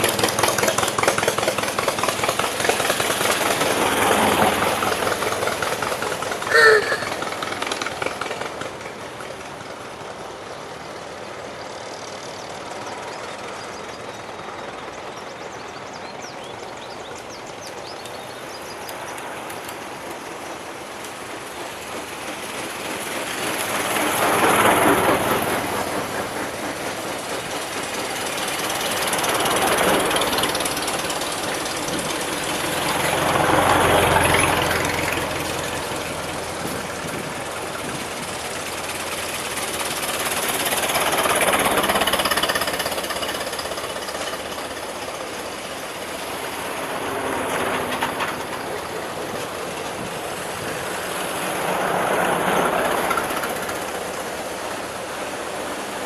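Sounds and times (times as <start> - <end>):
vintage cars driving past: 0.0 - 11.0, 27.7 - 56.0
engine noise: 0.0 - 56.0.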